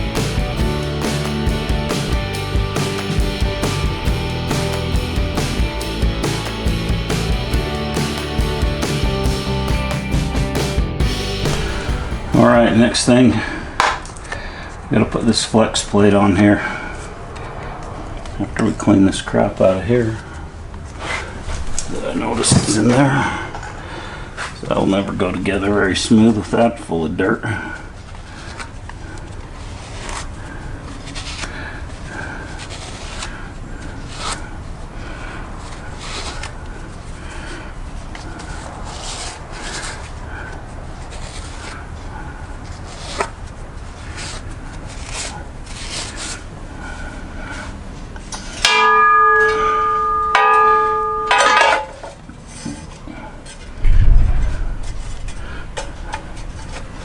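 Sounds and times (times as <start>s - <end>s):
heavy low thump: 0.0s - 13.1s, 53.8s - 55.7s
scraping and rubbing strokes: 0.0s - 13.1s, 35.6s - 48.6s
loud ringing tone: 48.7s - 51.7s.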